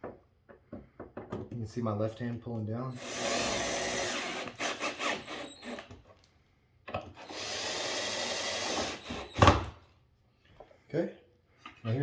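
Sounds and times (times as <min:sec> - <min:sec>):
power drill driving bolts: 0:02.9 - 0:06.0, 0:07.1 - 0:09.7.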